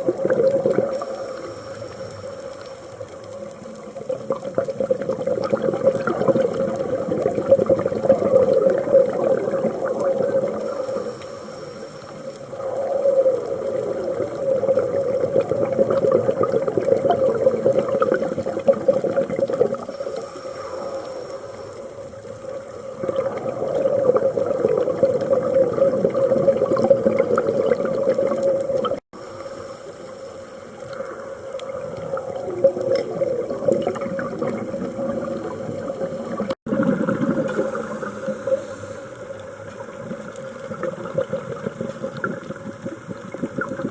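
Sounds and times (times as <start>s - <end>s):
bubbles rushing: 0.0s - 1.4s, 3.7s - 11.1s, 12.5s - 20.0s, 22.8s - 29.0s, 31.7s - 38.6s, 39.8s - 43.9s
diver breathing through regulator: 10.4s - 14.8s, 19.9s - 22.0s, 37.3s - 39.4s.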